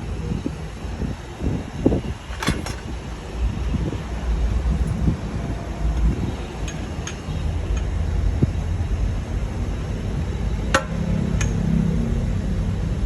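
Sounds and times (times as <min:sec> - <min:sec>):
metal tools clinking: 0:02.2 - 0:03.1, 0:04.7 - 0:08.7.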